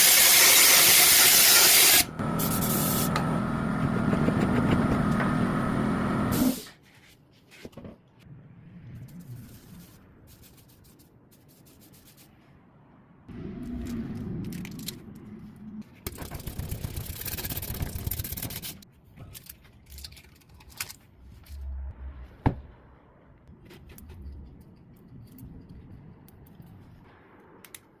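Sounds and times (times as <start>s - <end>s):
scraping and rubbing on tyre: 9.0s - 12.6s.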